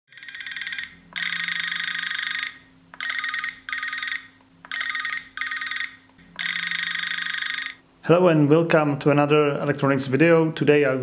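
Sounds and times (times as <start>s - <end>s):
electronic telephone ringer warbling: 0.1s - 7.8s.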